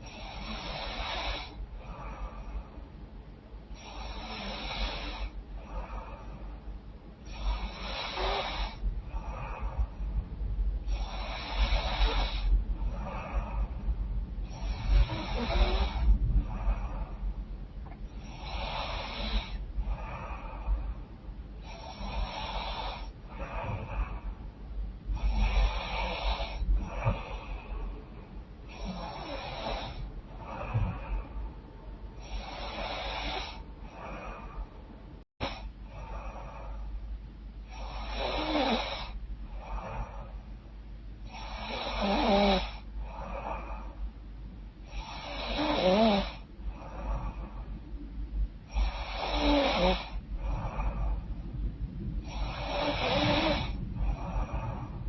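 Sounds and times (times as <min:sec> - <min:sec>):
woman snoring: 0:00.0 - 0:02.6, 0:03.8 - 0:06.4, 0:07.3 - 0:09.8, 0:10.9 - 0:13.8, 0:14.4 - 0:17.2, 0:18.2 - 0:20.8, 0:21.6 - 0:24.2, 0:25.2 - 0:27.8, 0:28.7 - 0:31.4, 0:32.2 - 0:34.7, 0:37.7 - 0:40.3, 0:41.3 - 0:44.0, 0:44.8 - 0:47.6, 0:48.7 - 0:51.2, 0:52.2 - 0:55.0.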